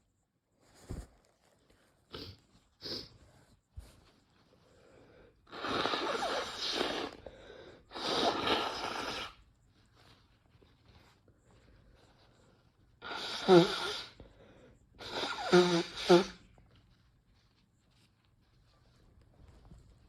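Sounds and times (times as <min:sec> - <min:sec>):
sharp sniffs: 0:02.1 - 0:04.9, 0:05.5 - 0:09.4, 0:13.0 - 0:16.5
forceful nose blows: 0:05.5 - 0:07.3, 0:07.9 - 0:09.4, 0:13.0 - 0:14.2, 0:15.0 - 0:16.5.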